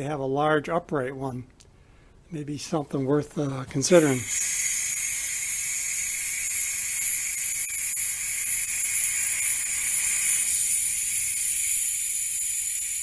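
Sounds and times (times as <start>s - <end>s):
compressed air hissing: 3.9s - 13.0s.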